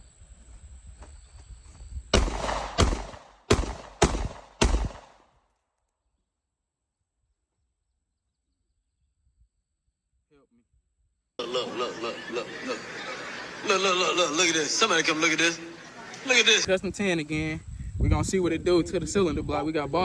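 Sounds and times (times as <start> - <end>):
gunshots with echo: 2.2 - 5.2.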